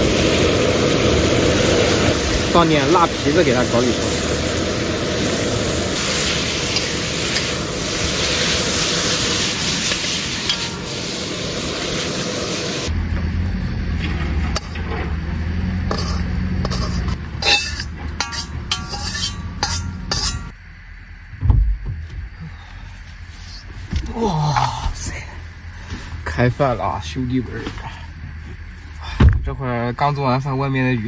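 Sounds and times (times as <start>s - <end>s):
meat sizzling in a pan: 0.0s - 12.9s
spatula clinking on pan: 16.7s - 20.5s.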